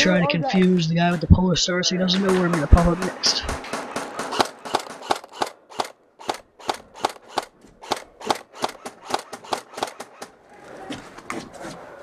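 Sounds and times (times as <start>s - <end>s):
airsoft gun firing rapid shots: 2.1s - 10.4s.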